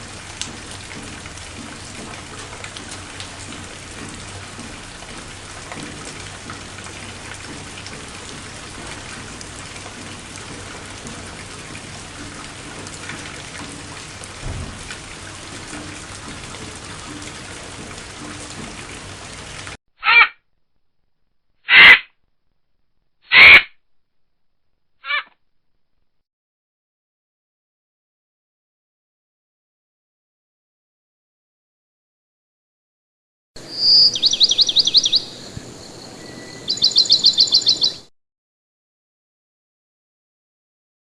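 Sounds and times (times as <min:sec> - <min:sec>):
raindrops ticking: 0:00.0 - 0:19.8, 0:33.6 - 0:38.0
steady rain falling: 0:00.0 - 0:19.8, 0:33.6 - 0:38.0
low thump: 0:14.4 - 0:15.0.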